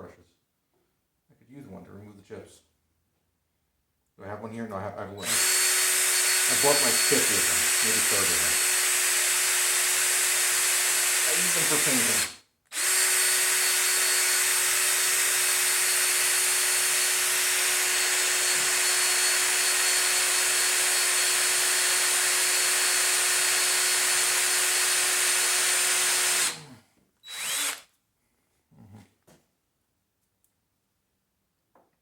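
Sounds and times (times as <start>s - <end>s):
power drill boring into metal: 5.2s - 27.8s.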